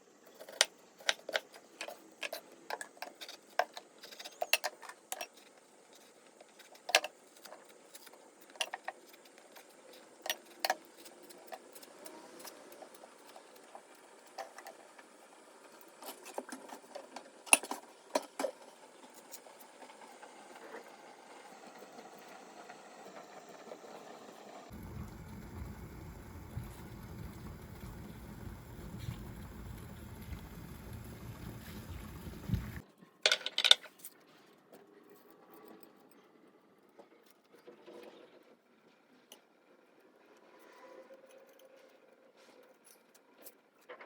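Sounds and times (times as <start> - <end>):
kitchenware clicking and knocking: 33.3 - 33.8.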